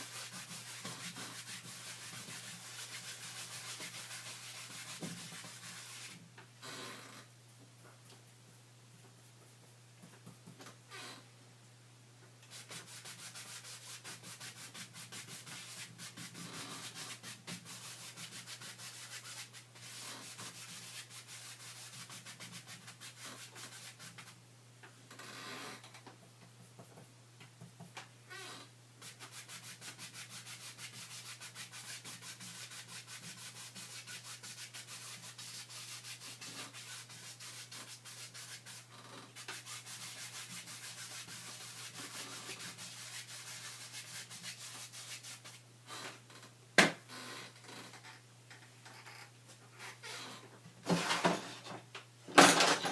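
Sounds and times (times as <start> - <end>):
rubbing strokes on painting surface: 0.0 - 6.2, 12.5 - 24.4, 29.0 - 45.6.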